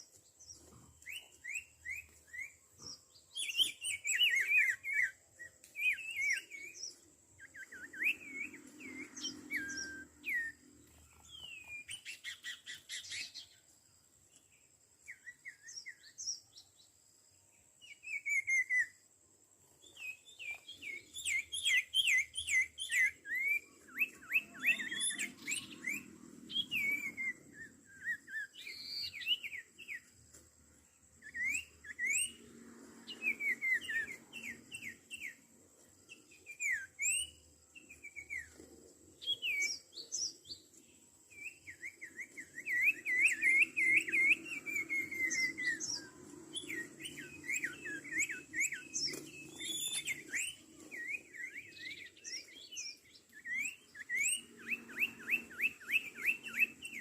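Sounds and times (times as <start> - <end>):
bird whistling chatter: 41.4 - 57.0.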